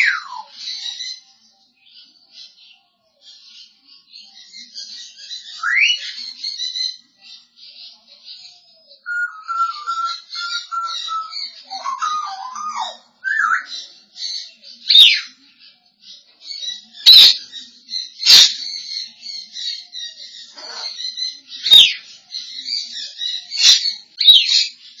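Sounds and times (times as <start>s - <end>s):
parrot chirping and chattering: 9.1s - 13.6s, 16.6s - 17.5s, 18.1s - 22.1s.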